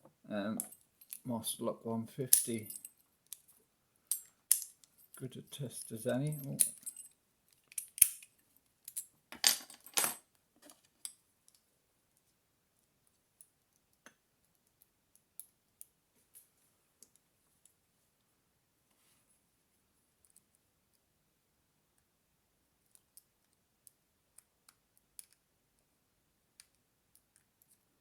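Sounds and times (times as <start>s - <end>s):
lock pick clicking in padlock: 7.7s - 8.3s.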